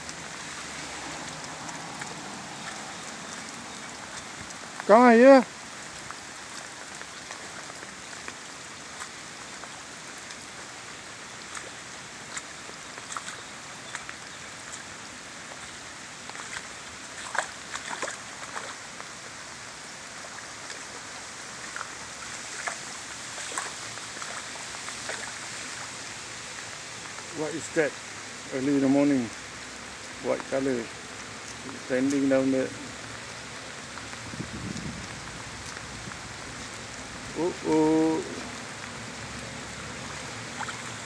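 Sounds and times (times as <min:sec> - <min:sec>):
raindrop taps: 0:00.0 - 0:05.2
steady rain hiss: 0:00.0 - 0:41.0.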